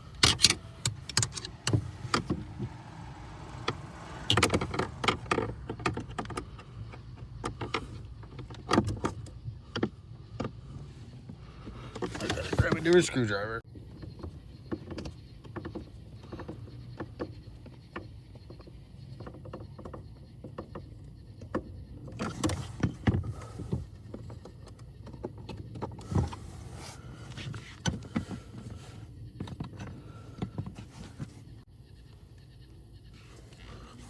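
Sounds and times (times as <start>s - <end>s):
hand tools clicking and knocking: 0.0s - 10.6s.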